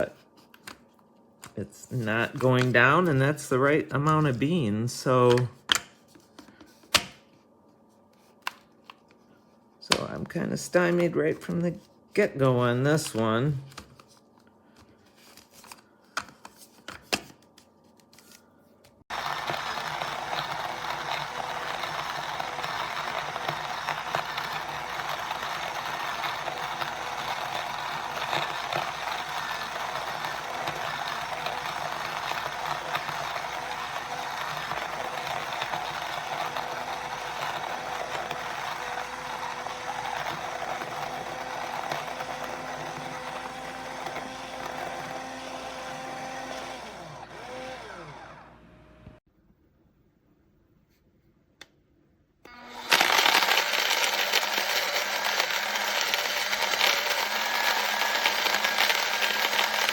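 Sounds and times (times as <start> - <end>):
electric coffee grinder grinding: 19.1 - 49.2, 52.5 - 59.9.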